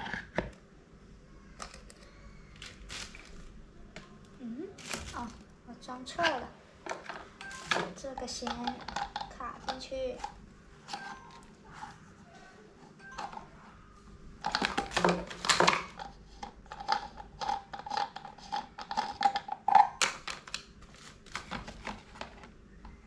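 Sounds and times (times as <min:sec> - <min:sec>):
plastic parts clicking and tapping: 0:06.2 - 0:11.4, 0:14.4 - 0:20.7.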